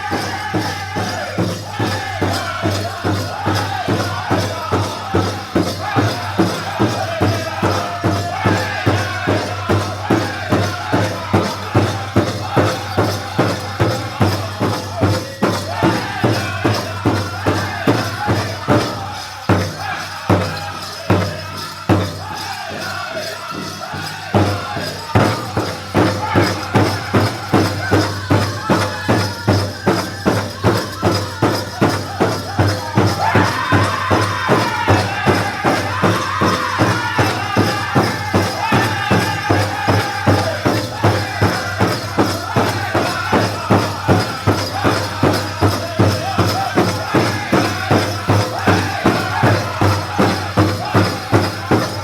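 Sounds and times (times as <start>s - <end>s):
big drum beating: 0.0s - 52.0s
group of singers: 0.0s - 52.0s.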